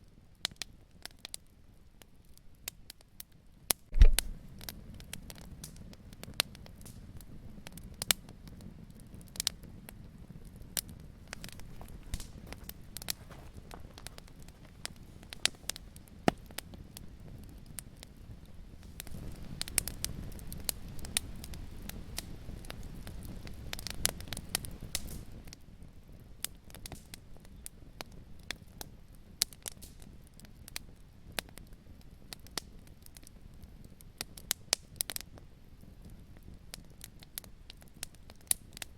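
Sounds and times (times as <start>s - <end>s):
fire crackling and popping: 0.0s - 38.9s
low steady rumble: 3.9s - 4.5s.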